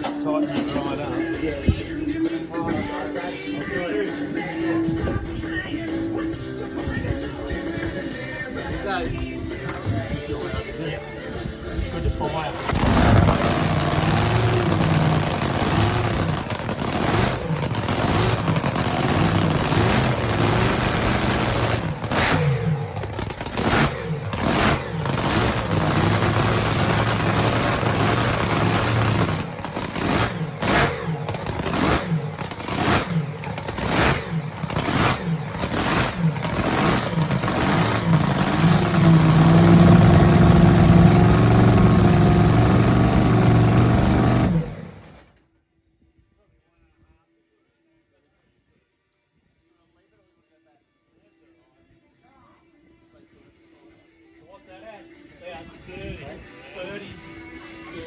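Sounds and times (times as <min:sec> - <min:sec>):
engine throttle blips: 0:11.8 - 0:45.3
boat engine idling rough: 0:12.1 - 0:45.3.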